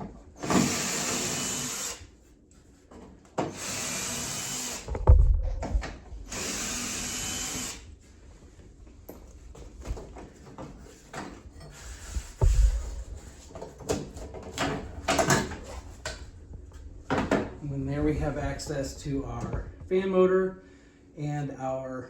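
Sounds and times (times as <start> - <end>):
power drill whirring: 0.4 - 2.1, 3.5 - 5.0, 6.3 - 7.8
heavy thump: 4.9 - 6.0, 12.1 - 13.5.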